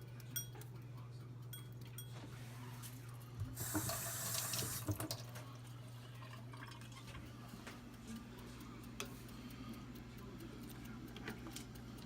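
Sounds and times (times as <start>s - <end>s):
steady low hum: 0.0s - 12.0s
kitchen tap running: 3.5s - 5.3s.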